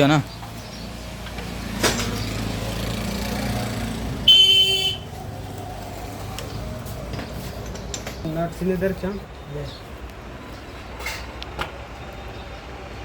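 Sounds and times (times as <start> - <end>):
road traffic rumbling: 0.0 - 13.0
vehicle horn honk: 4.2 - 5.1.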